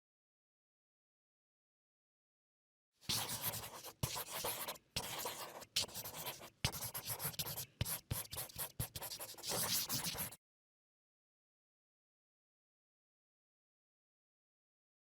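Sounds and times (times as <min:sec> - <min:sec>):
pencil scratching on paper: 0:03.1 - 0:10.4.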